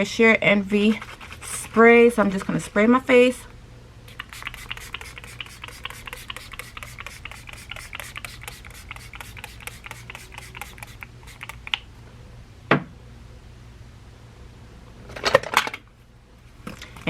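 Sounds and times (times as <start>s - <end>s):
mist pump spray squirts: 4.1s - 11.8s.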